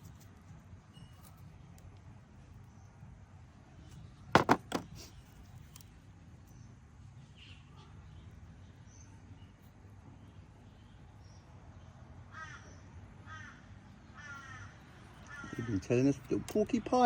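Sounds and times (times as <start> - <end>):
low outdoor background noise: 0.0 - 17.0
sharp knocks: 4.4 - 4.9
faint bird chirp: 6.4 - 16.0.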